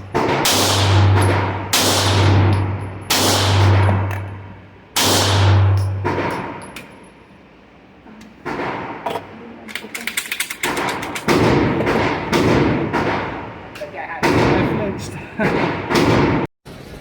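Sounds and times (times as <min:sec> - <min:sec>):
pistol shots echoing indoors: 0:00.0 - 0:06.9, 0:10.6 - 0:14.7, 0:15.4 - 0:16.4.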